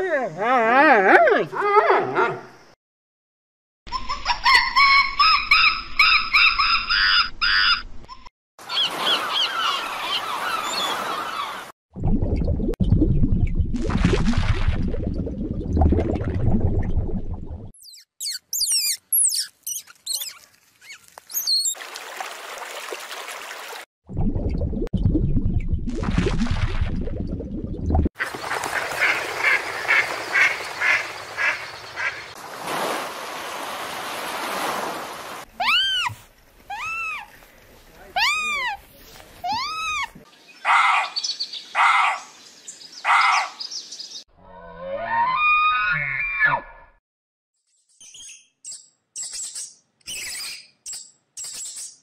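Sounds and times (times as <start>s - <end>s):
drawn-out rising falling calls: 8.6s - 11.7s, 28.3s - 42.3s
high-pitched squeaks: 17.8s - 21.8s
animal calling: 35.5s - 37.4s, 38.1s - 41.2s.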